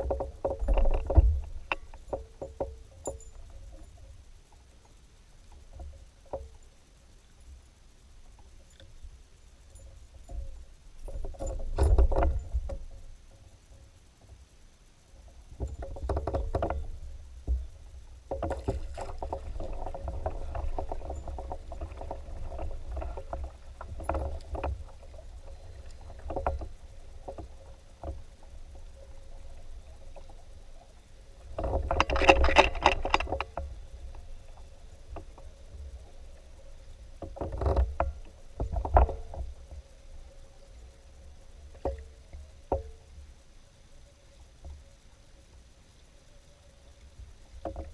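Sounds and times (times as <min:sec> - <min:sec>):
faint steady hum: 0:00.0 - 0:47.9
water sloshing: 0:15.6 - 0:39.9.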